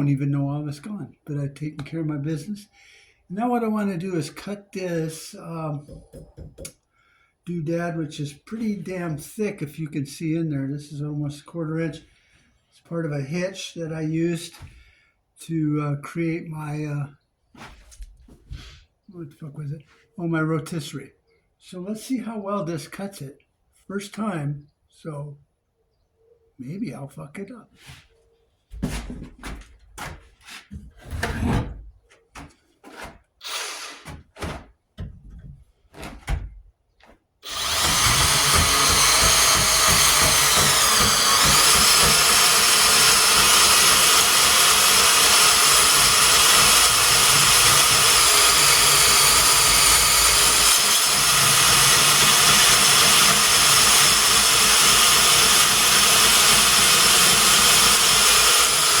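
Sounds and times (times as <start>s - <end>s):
knocks and clicks: 5.8s - 6.8s
band saw cutting steel: 33.4s - 34.1s, 37.4s - 59.0s.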